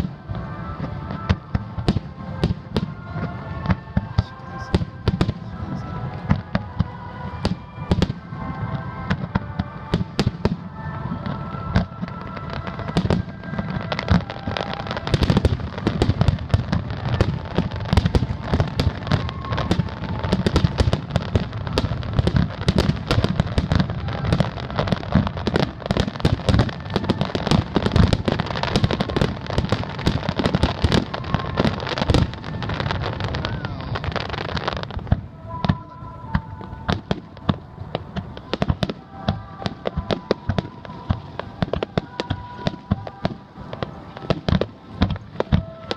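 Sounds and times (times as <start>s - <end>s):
background music: 0.0s - 45.9s
fireworks bangs and crackles: 0.0s - 45.9s.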